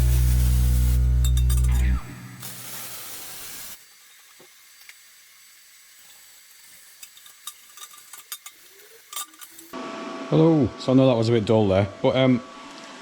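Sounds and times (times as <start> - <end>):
music: 0.0 - 2.5
welding hiss: 0.0 - 9.8.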